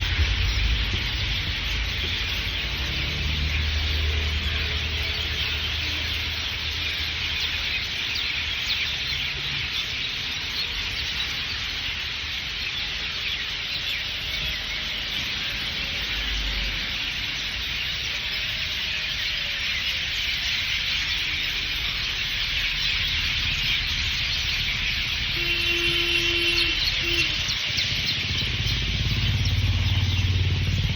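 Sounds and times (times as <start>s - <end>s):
many small birds chirping: 0.0s - 30.9s.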